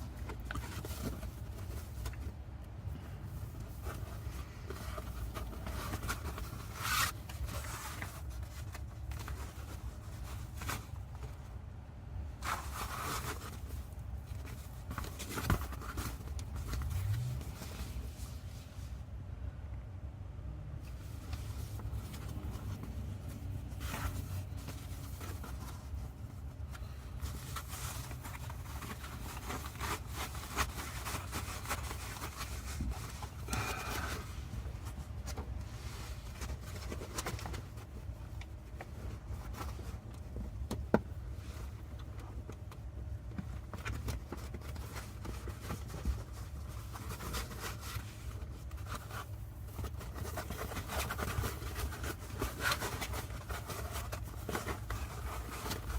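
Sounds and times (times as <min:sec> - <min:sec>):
fabric and foam rustling: 0:00.0 - 0:19.6, 0:20.8 - 0:55.9.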